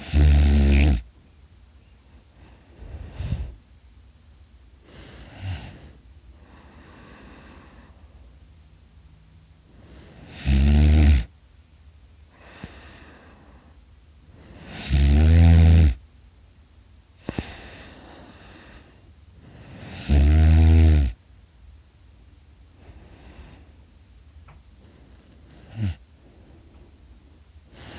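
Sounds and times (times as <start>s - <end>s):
person snoring loudly: 0.0s - 1.0s, 10.2s - 11.3s, 14.6s - 16.0s, 19.7s - 21.2s, 25.6s - 26.0s
quiet breaths: 0.0s - 27.9s.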